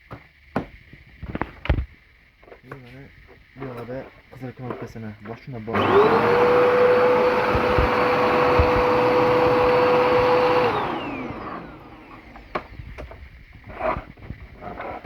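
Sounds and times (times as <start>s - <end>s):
vacuum cleaner motor whine: 3.6s - 15.0s.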